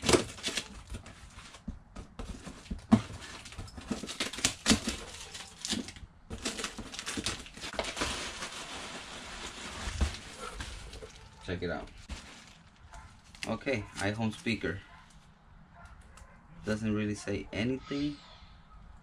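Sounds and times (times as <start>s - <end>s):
packaging rustling: 0.0s - 14.6s.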